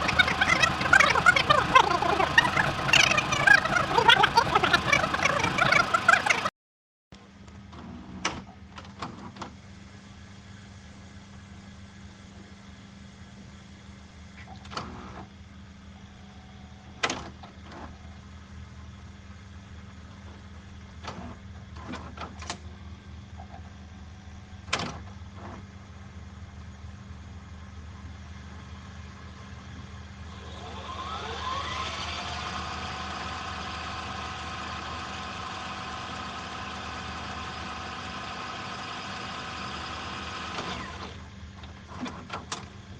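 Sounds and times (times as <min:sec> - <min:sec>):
rewind motor whine: 0:00.0 - 0:06.5, 0:30.2 - 0:41.3
steady hum: 0:00.0 - 0:06.5.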